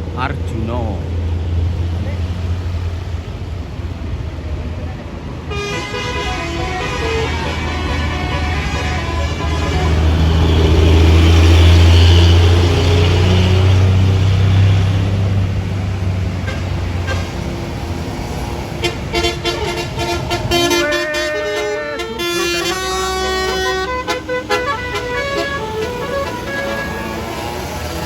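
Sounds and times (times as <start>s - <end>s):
bus diesel engine running: 0.0s - 28.0s
multi-tone horn melody: 5.5s - 12.2s, 16.4s - 17.6s, 18.8s - 28.0s.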